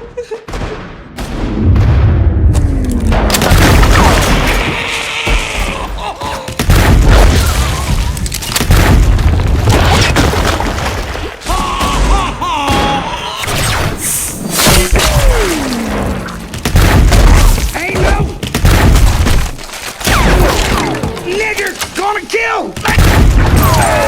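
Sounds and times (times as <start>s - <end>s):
booming impacts and gunshot bangs: 0.4s - 11.1s, 11.8s - 21.2s, 22.8s - 24.0s
heavy low rumble: 1.6s - 3.7s.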